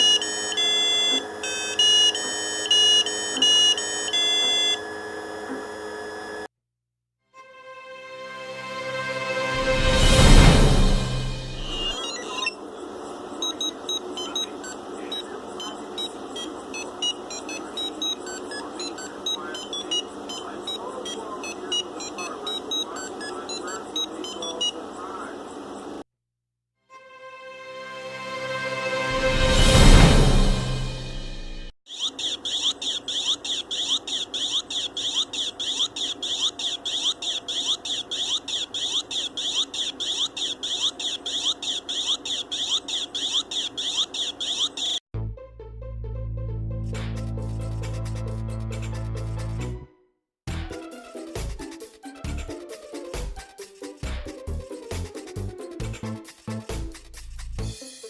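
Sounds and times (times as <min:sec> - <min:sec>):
rapid electronic buzzer beeps: 0:00.0 - 0:06.5, 0:11.1 - 0:12.6, 0:13.4 - 0:24.8, 0:31.9 - 0:45.0.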